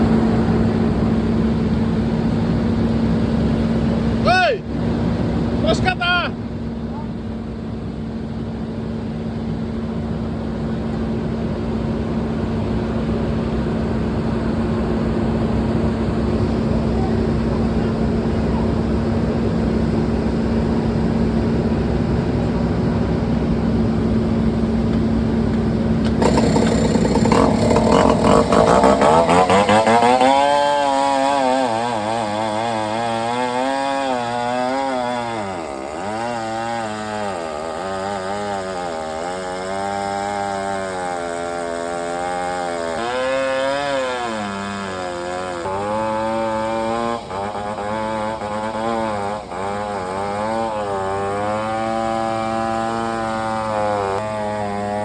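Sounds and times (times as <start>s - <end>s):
chainsaw cutting logs: 26.0s - 55.0s.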